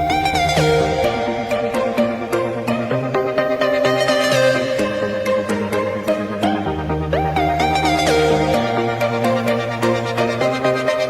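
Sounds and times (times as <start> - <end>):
electronic music with steady beat: 0.0 - 11.0.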